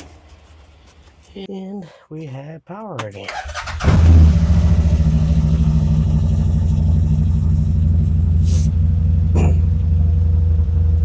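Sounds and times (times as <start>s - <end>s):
engine idling: 3.0s - 11.0s.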